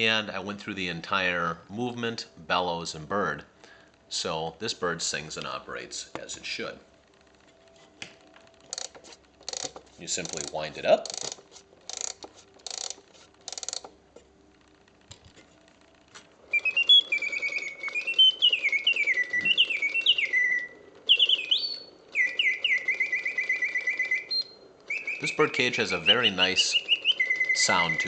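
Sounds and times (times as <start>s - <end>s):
faint clockwork whir: 0.0s - 28.0s
ratcheting winding clicks: 8.6s - 20.2s
mechanical bird warbling chirps: 8.7s - 13.9s, 16.5s - 28.0s.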